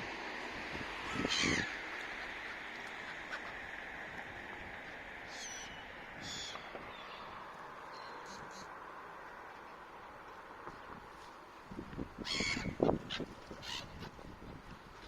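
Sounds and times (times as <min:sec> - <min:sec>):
gulls calling: 0:01.0 - 0:03.7.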